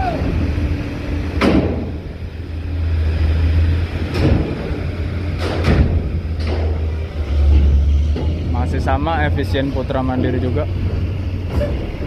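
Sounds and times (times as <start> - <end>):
bus engine rumble: 0.0 - 12.0
sharp clunks: 1.4 - 1.9, 4.1 - 8.5.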